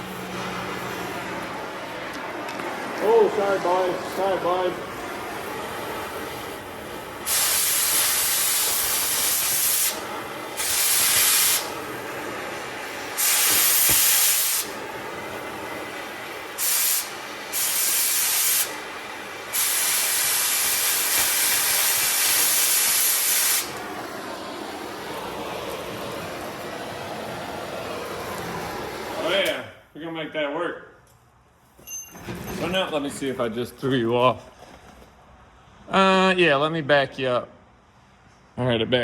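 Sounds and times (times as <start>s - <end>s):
cutting torch hissing: 0.0s - 29.7s
loud bursts of torch hiss: 0.0s - 29.8s.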